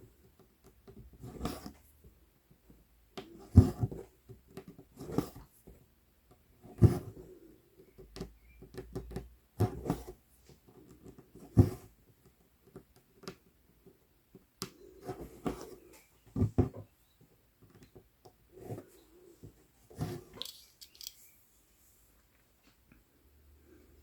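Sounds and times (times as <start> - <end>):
thread drawn through rustling: 20.0 - 22.8.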